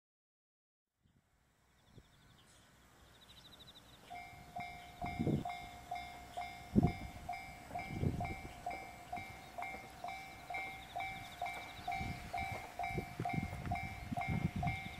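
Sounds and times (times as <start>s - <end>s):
level-crossing alarm bell tone: 4.0s - 14.9s.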